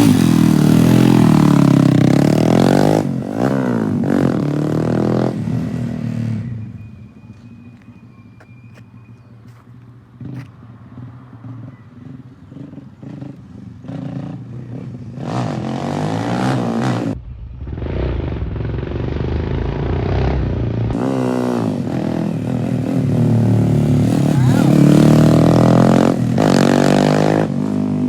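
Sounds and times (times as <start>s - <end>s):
motorcycle engine running: 0.0s - 5.8s, 17.1s - 26.8s.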